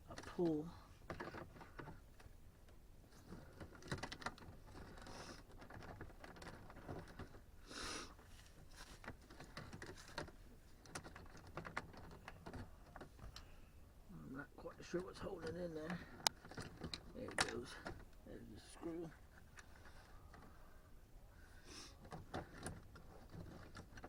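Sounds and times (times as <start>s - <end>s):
plastic trim scraping: 22.0s - 24.0s.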